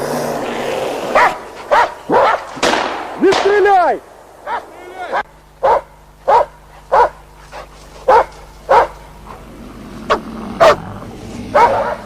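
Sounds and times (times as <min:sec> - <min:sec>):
dog barking: 0:01.2 - 0:02.5, 0:04.4 - 0:09.1, 0:10.1 - 0:10.9, 0:11.5 - 0:12.0.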